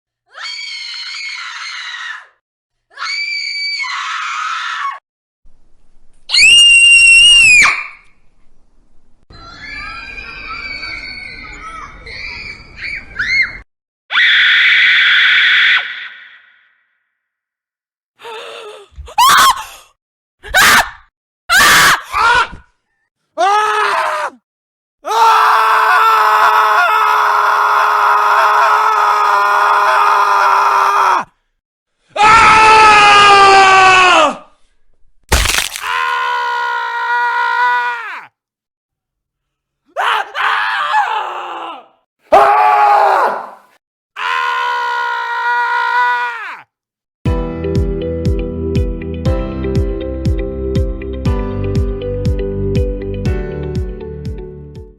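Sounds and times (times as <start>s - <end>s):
person screaming: 35.3s - 38.3s, 40.0s - 43.6s.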